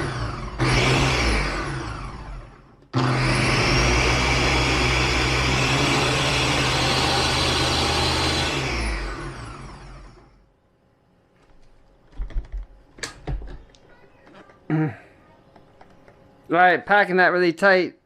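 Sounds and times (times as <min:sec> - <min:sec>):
blender motor whining: 0:00.0 - 0:10.3.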